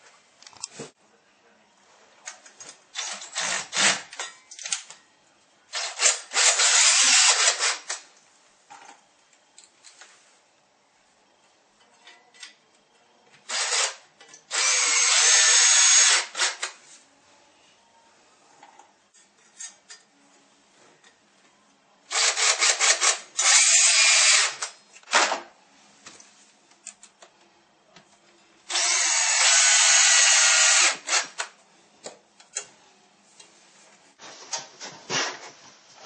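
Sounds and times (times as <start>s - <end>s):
power drill drilling into wall: 5.8s - 7.9s, 13.5s - 16.7s, 22.1s - 24.7s, 28.7s - 31.4s.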